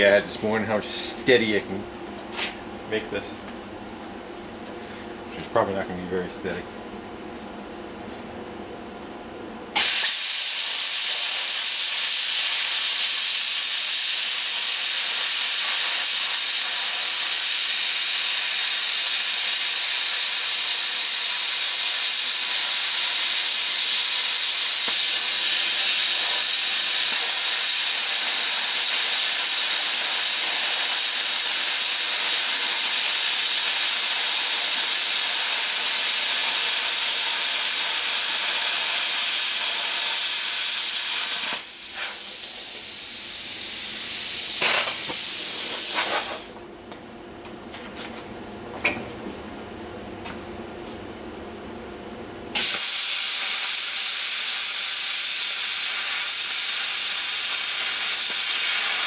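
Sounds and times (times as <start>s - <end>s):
plasma cutter hissing: 9.8s - 46.6s, 52.6s - 59.0s.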